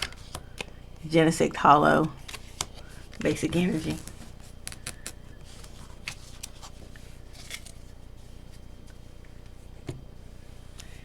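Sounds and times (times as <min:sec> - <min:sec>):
low steady hum: 0:00.0 - 0:11.0
cards and wrapping rustling: 0:01.9 - 0:08.0.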